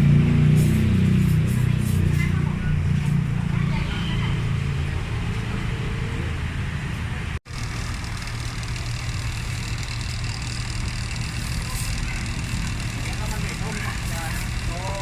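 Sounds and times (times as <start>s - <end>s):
low mechanical hum: 7.5s - 15.0s.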